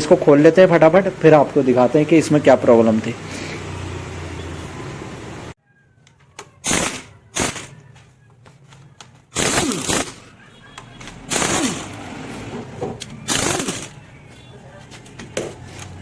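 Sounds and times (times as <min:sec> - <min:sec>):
impact wrench rattling: 0:06.6 - 0:07.7, 0:09.3 - 0:10.3, 0:11.1 - 0:12.0, 0:13.0 - 0:14.0.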